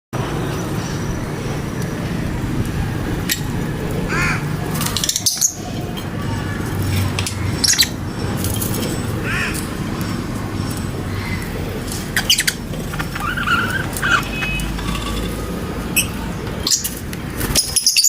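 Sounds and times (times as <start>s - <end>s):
lovebird squawk: 12.2s - 14.7s.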